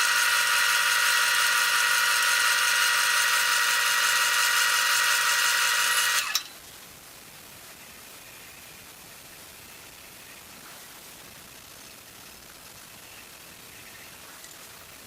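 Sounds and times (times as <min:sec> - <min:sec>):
wood lathe motor whine: 0:00.0 - 0:06.4
faint hiss: 0:06.3 - 0:15.0.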